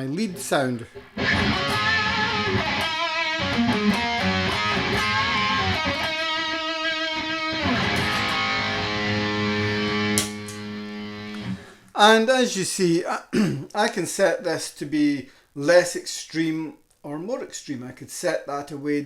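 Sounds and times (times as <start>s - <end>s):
electric guitar lead lines: 0.8s - 11.8s.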